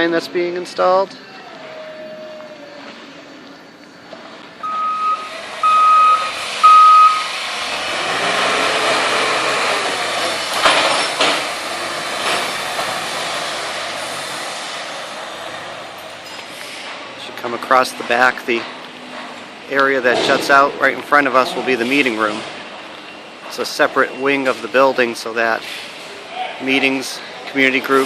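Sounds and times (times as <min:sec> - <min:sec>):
construction vehicle engine running: 0:04.0 - 0:23.6
reversing alarm beeping: 0:04.6 - 0:07.4.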